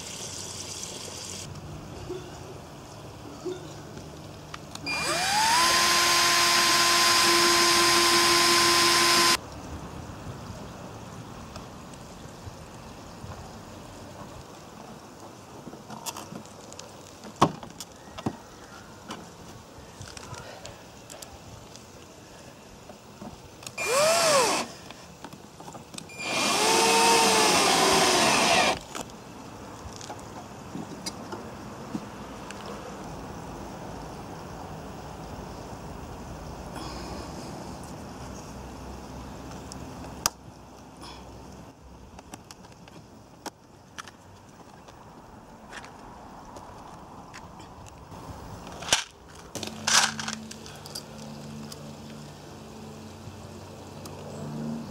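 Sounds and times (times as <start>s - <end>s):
power tool motor whine: 4.9s - 9.4s, 23.8s - 24.7s, 26.1s - 28.8s.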